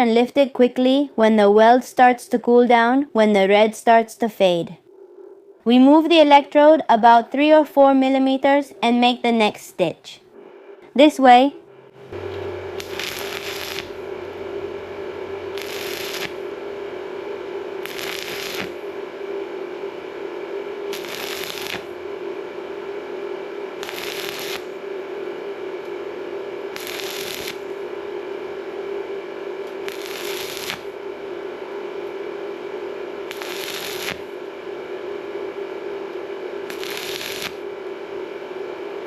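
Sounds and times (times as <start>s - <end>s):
steady hum: 2.3s - 39.0s
welding arc crackling: 12.0s - 19.0s, 20.9s - 22.0s, 23.8s - 24.8s, 26.7s - 27.8s, 29.7s - 31.0s, 33.2s - 34.4s, 36.6s - 37.7s.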